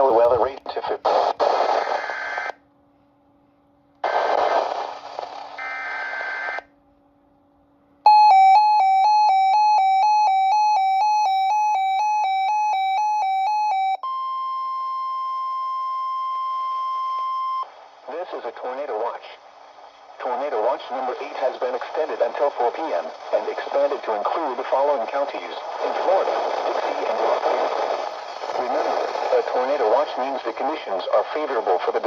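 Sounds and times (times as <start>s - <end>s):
steady warning alarm tone: 8.1s - 17.7s.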